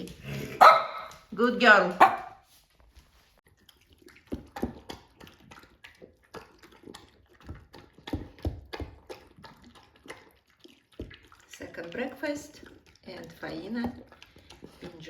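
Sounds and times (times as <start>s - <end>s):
dog chewing meat: 3.4s - 15.0s.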